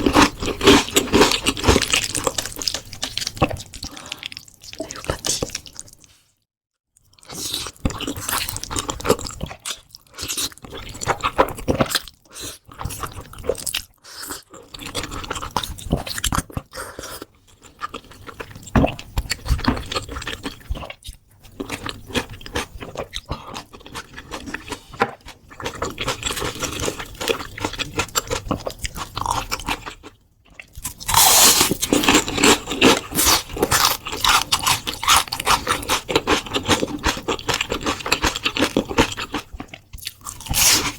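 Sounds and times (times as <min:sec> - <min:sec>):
crunchy bites and chewing: 0:00.0 - 0:06.0, 0:17.6 - 0:40.9.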